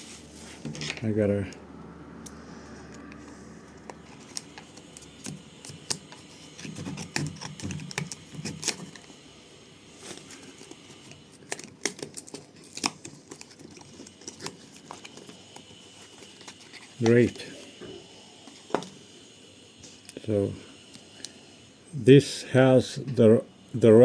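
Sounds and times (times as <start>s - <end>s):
packaging crinkling and rustling: 10.0s - 17.3s.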